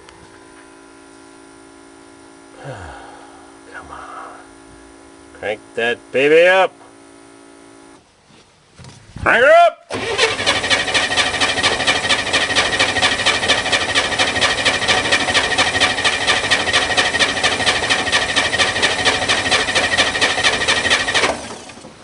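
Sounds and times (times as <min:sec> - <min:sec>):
engine cranking: 0:09.9 - 0:22.0
starter motor whine: 0:09.9 - 0:22.0.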